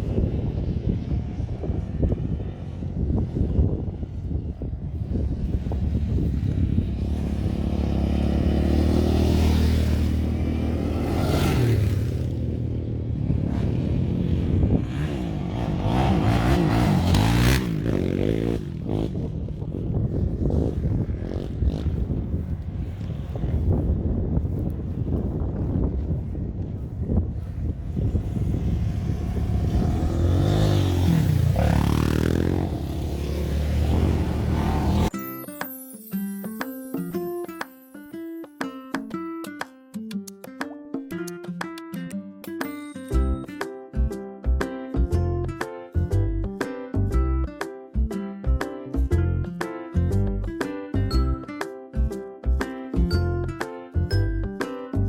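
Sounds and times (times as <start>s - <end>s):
off-road vehicle engine revving: 6.5s - 19.2s, 28.0s - 35.1s
piano music: 35.1s - 39.6s, 40.7s - 55.0s.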